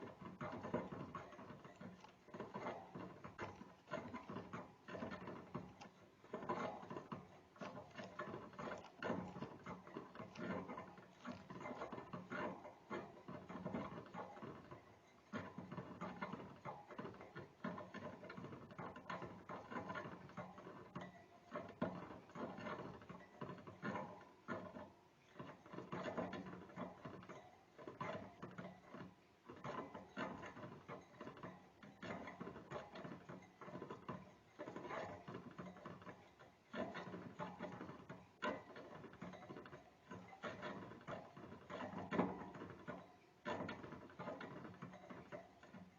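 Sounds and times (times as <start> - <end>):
rodent gnawing: 1.2 - 14.4.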